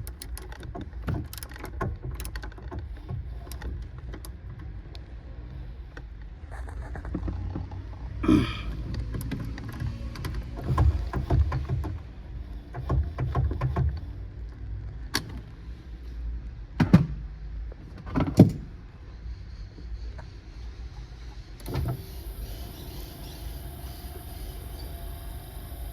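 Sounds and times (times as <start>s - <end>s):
run of clicks: 0.0s - 5.1s.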